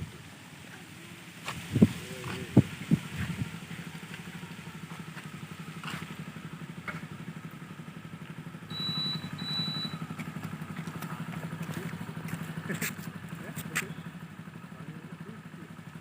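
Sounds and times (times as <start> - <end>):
small engine idling: 0.0 - 16.0
thin high tone: 8.7 - 10.0.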